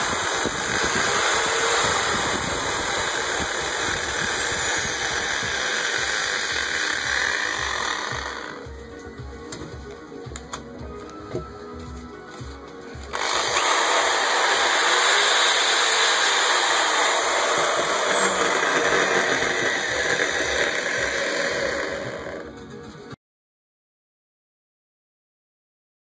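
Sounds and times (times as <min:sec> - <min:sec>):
impact drill running: 0:00.0 - 0:08.7, 0:13.1 - 0:22.4.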